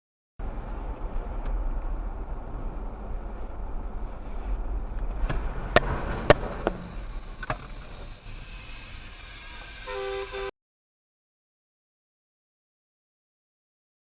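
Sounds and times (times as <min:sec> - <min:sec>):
vehicle rumble on road: 0:00.4 - 0:10.5
sharp bangs and knocks: 0:05.1 - 0:07.8
short electronic tone: 0:09.8 - 0:10.5.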